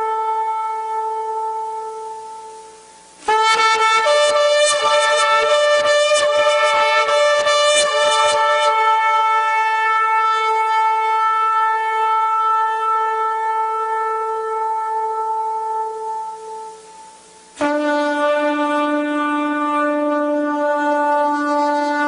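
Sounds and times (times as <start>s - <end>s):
shofar blast: 0.0s - 22.0s.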